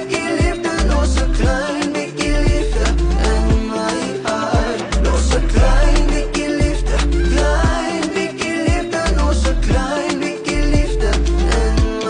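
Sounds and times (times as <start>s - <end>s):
music with steady beat: 0.0s - 12.0s
deep bass hits: 5.0s - 7.8s.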